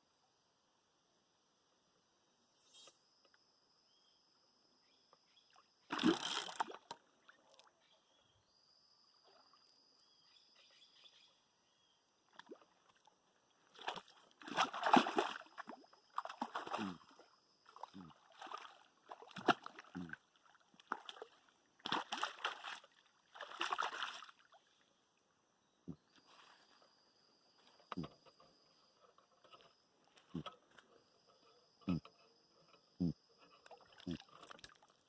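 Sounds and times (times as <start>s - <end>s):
water splashing: 5.9s - 7.0s, 13.7s - 24.6s.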